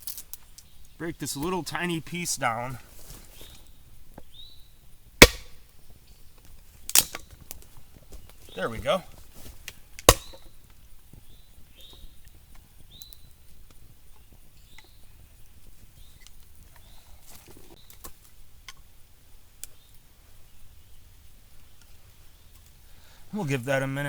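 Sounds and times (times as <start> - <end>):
sharp wood crack: 5.2 - 5.8, 6.8 - 9.0, 9.6 - 10.8
faint ticks and snaps: 9.6 - 16.9.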